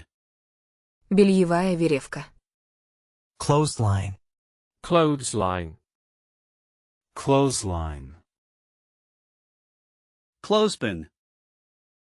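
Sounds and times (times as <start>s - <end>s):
synthesized voice: 3.4s - 4.2s.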